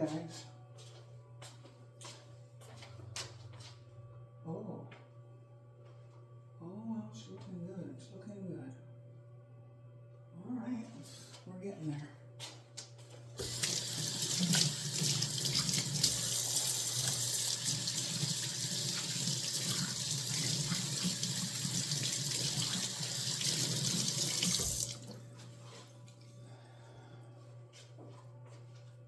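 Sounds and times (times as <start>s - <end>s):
tap running into sink: 13.4s - 25.2s.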